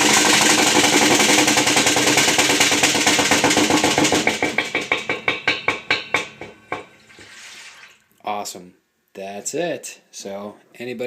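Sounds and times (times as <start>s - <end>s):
washer rapid knocking clatter: 0.0s - 7.0s
spinning tub hum: 0.0s - 7.9s.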